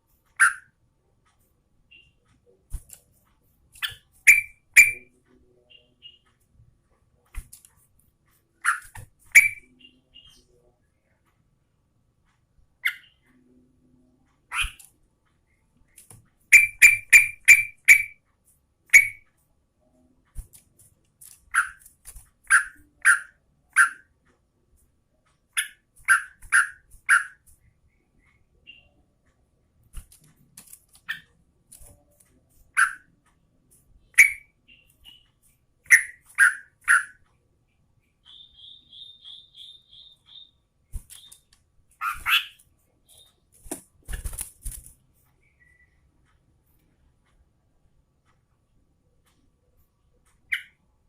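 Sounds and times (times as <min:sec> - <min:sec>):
bulbul chirping: 0:00.4 - 0:00.8, 0:03.8 - 0:05.1, 0:08.6 - 0:10.4, 0:16.5 - 0:18.2, 0:34.0 - 0:37.2, 0:38.1 - 0:43.5.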